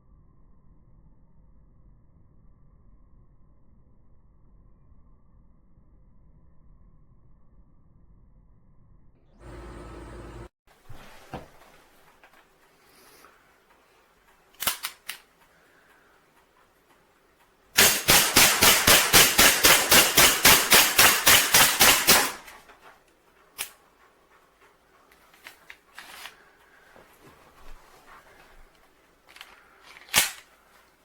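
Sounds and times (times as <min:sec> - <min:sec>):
sharp clicks: 0:14.5 - 0:15.5
air pistol firing: 0:17.8 - 0:22.6, 0:30.0 - 0:30.5.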